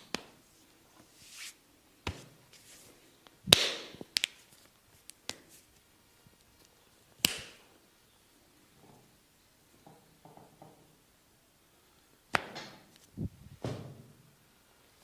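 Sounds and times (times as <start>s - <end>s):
percussive massage strikes: 12.3s - 12.8s.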